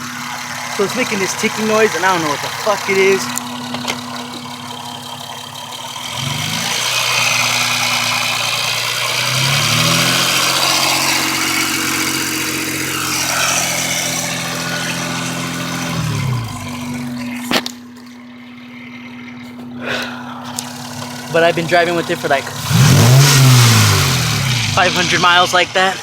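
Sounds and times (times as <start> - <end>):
car engine revving from idle: 0.0 - 26.0
engine ticking: 0.0 - 26.0.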